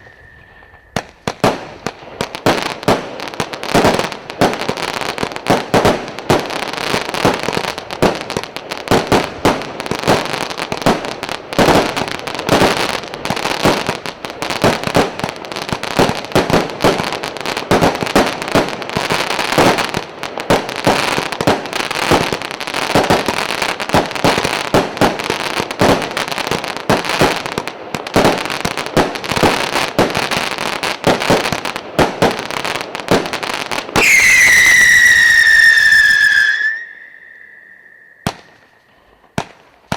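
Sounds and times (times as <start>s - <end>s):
whistling firework falling pitch: 0.0s - 1.6s, 34.0s - 38.9s
fireworks shots and crackling: 0.0s - 39.9s.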